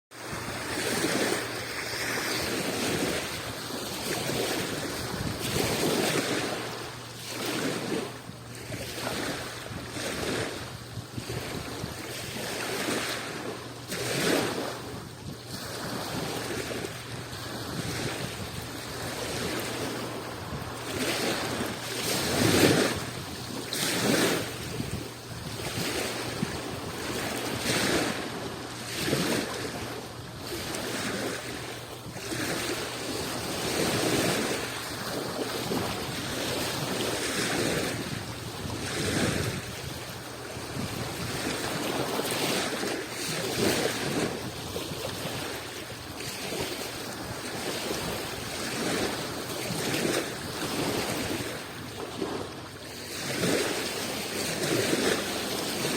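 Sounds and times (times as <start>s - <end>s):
waves breaking on shore: 0.1s - 55.9s
wind buffeting microphone: 0.2s - 55.9s.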